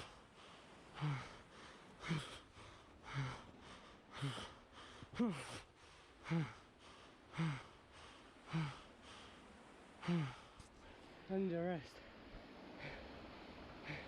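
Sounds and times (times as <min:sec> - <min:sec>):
person breathing hard: 0:00.0 - 0:10.9.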